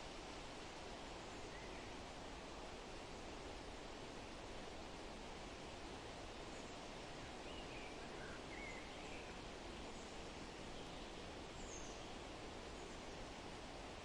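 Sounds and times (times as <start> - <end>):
forest rustling hiss: 0.0 - 14.0
faint bird chirps: 6.5 - 13.3.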